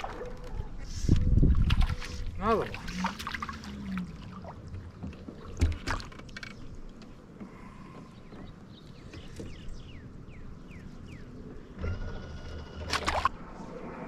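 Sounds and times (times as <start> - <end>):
water sloshing against canoe: 1.5 - 9.7
sharp splashes: 1.6 - 4.6.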